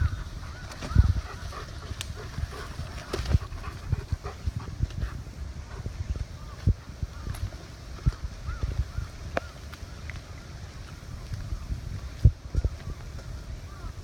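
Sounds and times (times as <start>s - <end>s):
dog panting: 0.0s - 6.0s.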